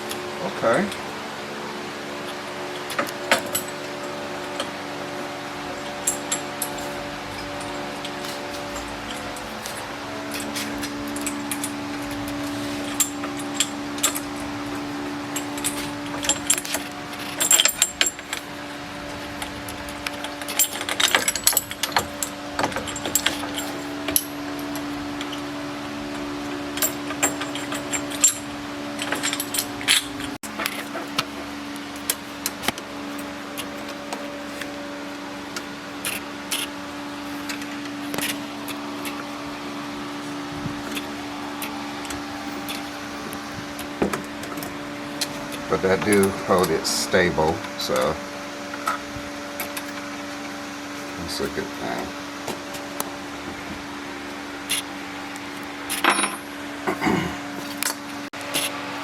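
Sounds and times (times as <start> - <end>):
steady low hum: 0.0 - 59.0
metal tools clinking: 2.8 - 25.5, 26.1 - 34.7, 55.9 - 58.7.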